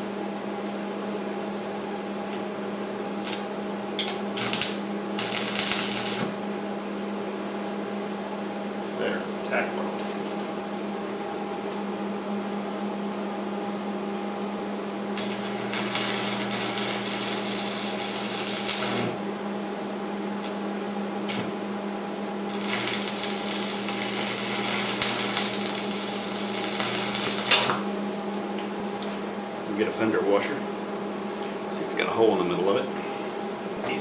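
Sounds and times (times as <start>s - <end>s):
steady low hum: 0.0s - 34.0s
welding arc crackle: 3.2s - 6.5s, 15.2s - 19.3s, 20.4s - 20.6s, 21.2s - 21.7s, 22.5s - 28.0s.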